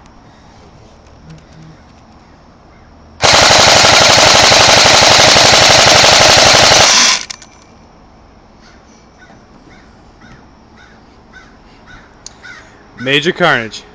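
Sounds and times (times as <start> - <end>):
airsoft rifle full-auto burst: 3.2 - 7.4.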